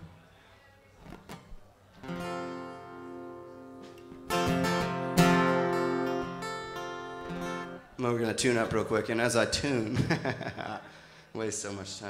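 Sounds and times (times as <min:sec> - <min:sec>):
guitar strummed: 0:02.0 - 0:07.9.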